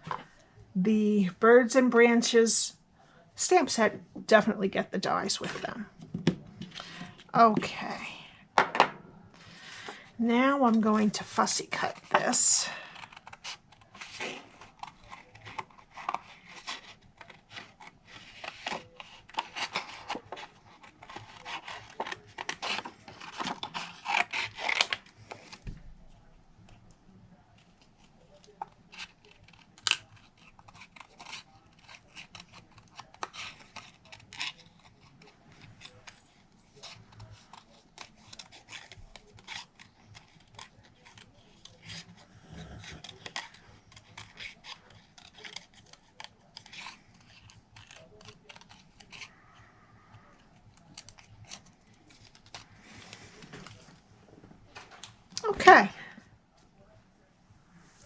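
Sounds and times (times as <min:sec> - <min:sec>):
scissors snipping paper: 0:10.9 - 0:25.6, 0:27.5 - 0:49.3, 0:50.2 - 0:53.9.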